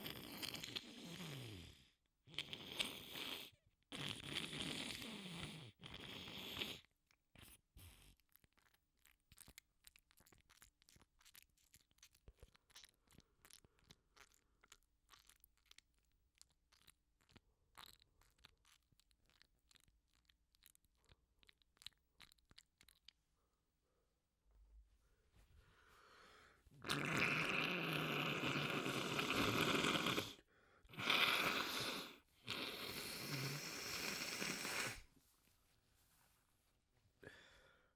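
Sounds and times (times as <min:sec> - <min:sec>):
person blowing nose: 0:31.0 - 0:35.0.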